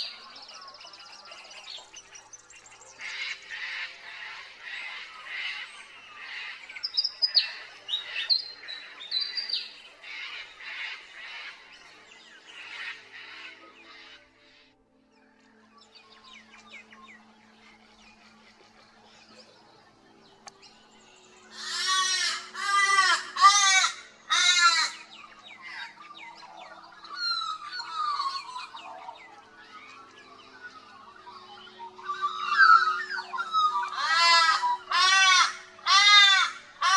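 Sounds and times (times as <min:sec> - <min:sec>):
birds chirping and twittering: 0:00.0 - 0:36.9
loud harsh bird calls: 0:21.5 - 0:26.0, 0:27.0 - 0:36.9.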